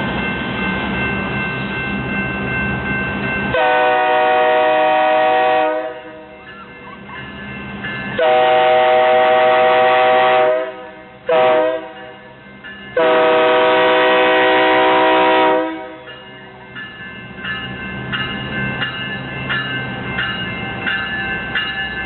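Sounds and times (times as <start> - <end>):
locomotive air horn blasts: 3.6 - 6.2, 8.2 - 12.0, 13.0 - 16.1.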